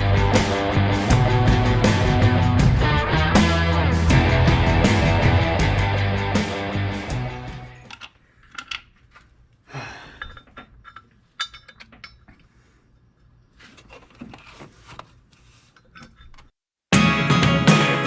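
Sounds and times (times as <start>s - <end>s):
loud guitar music: 0.0s - 7.8s, 16.9s - 18.0s.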